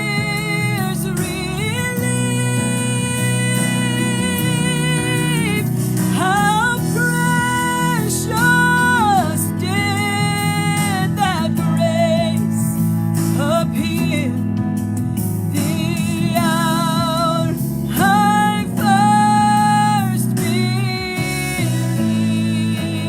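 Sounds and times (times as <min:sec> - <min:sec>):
person singing long notes: 0:00.0 - 0:12.7
instrumental accompaniment: 0:00.0 - 0:23.0.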